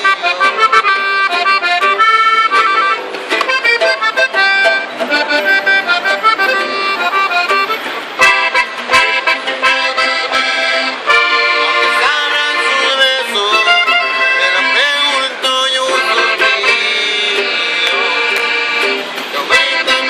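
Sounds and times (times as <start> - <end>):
accordion playing: 0.0 - 20.0
band backing: 0.0 - 20.0
person singing: 11.8 - 18.7, 19.4 - 20.0.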